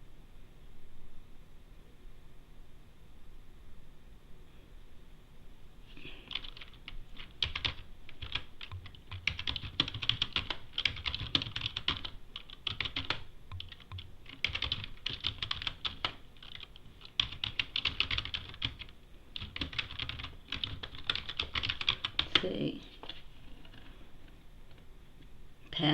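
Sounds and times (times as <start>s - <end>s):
computer keyboard typing: 6.2s - 22.6s.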